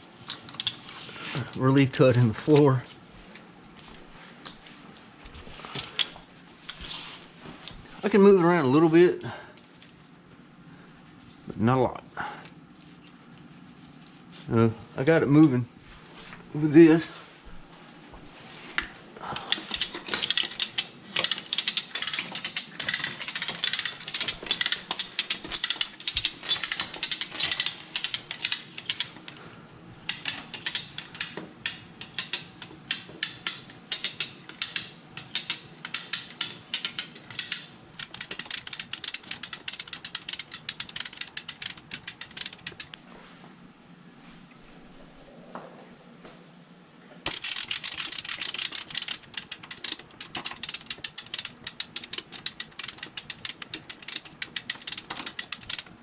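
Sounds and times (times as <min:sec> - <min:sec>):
ratchet clicking: 0:19.5 - 0:29.2, 0:30.1 - 0:43.0, 0:47.3 - 0:56.0.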